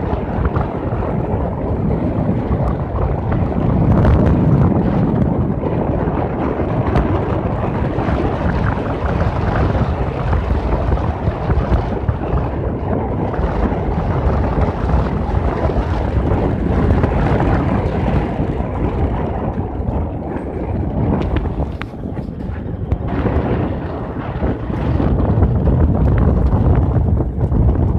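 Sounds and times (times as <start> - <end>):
road noise: 0.0 - 27.9
wind buffeting microphone: 0.0 - 27.9.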